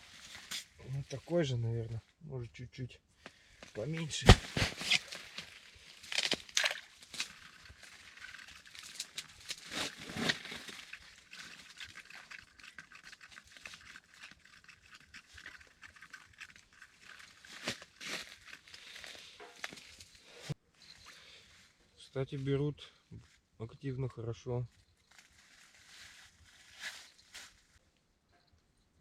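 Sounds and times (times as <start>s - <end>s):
hands rustling and crinkling: 17.0s - 20.6s, 25.0s - 27.8s.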